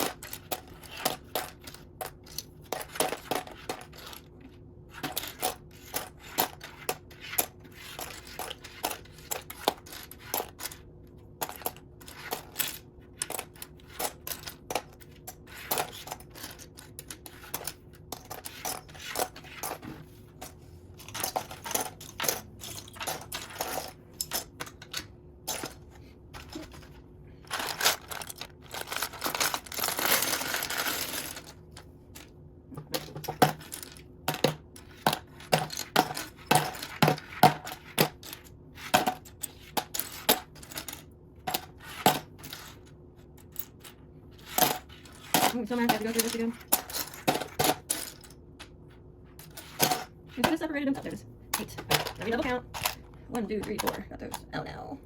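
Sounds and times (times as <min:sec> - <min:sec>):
plastic toy bricks clattering: 0:00.0 - 0:19.9, 0:21.0 - 0:25.8, 0:26.4 - 0:42.8, 0:43.4 - 0:48.4, 0:49.4 - 0:54.5.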